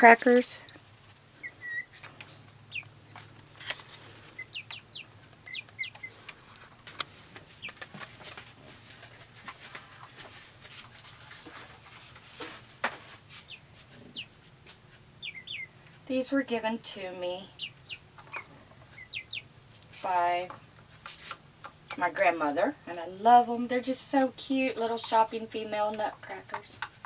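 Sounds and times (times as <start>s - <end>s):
chicks peeping: 0.7s - 10.4s, 13.3s - 20.5s.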